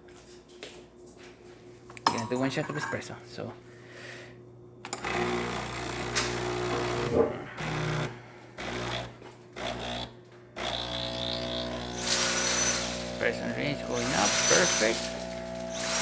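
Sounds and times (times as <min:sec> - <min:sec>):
espresso machine pump humming: 0:04.9 - 0:09.2, 0:10.6 - 0:16.0.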